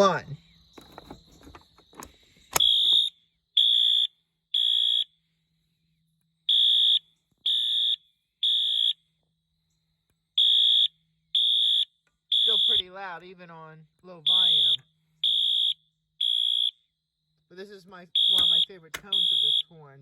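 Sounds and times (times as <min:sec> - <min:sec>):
fire alarm horn blasts: 0:02.6 - 0:05.2, 0:06.5 - 0:09.1, 0:10.4 - 0:13.1, 0:14.2 - 0:17.0, 0:17.7 - 0:20.0.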